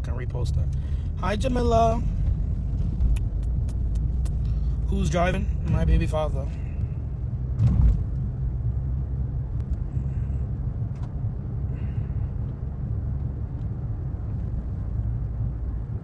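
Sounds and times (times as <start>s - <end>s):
car road rumble inside cabin: 0.0s - 16.0s.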